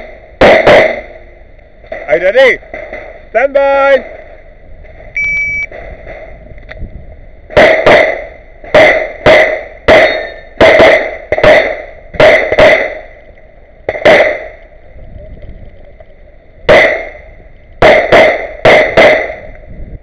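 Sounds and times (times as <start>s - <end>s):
pistol shots: 0.0s - 1.2s, 7.5s - 13.1s, 13.9s - 14.6s, 16.7s - 17.2s, 17.8s - 19.5s
shot timer beep: 5.2s - 5.7s.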